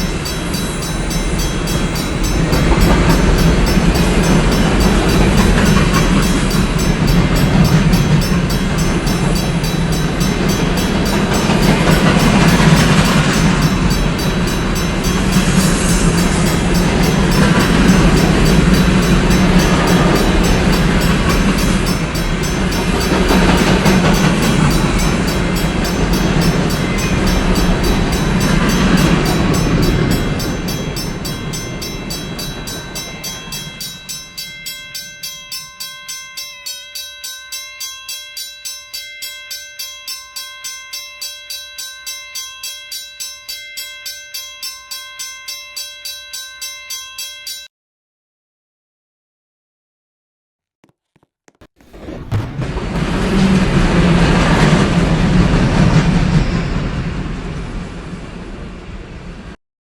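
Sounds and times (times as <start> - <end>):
train rumbling: 0.0 - 36.0, 51.8 - 59.6
crossing bell ringing: 0.0 - 47.7, 53.0 - 59.3.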